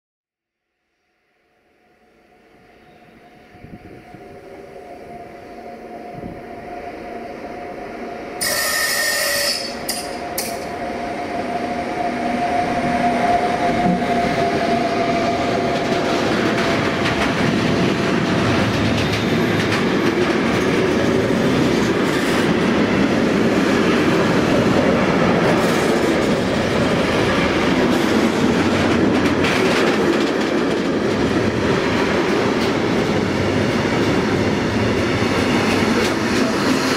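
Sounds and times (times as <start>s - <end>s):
loud shrill bursts: 8.4s - 10.2s
train wheel squeal: 8.4s - 10.8s
freight train wheels rattling: 13.0s - 36.9s.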